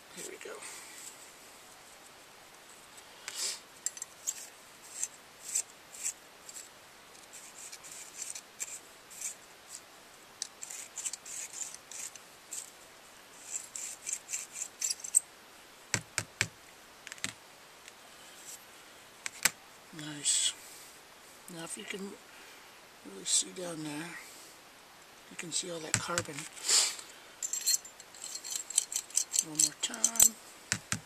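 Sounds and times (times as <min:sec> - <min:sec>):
tool rasping inside metal part: 0:10.5 - 0:12.7, 0:13.4 - 0:15.2, 0:27.4 - 0:30.3.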